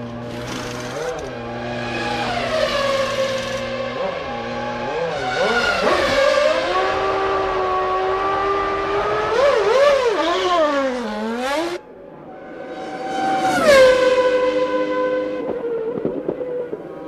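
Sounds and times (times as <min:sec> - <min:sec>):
race car engine revving: 0:00.0 - 0:11.8
race car passing by: 0:00.2 - 0:17.0.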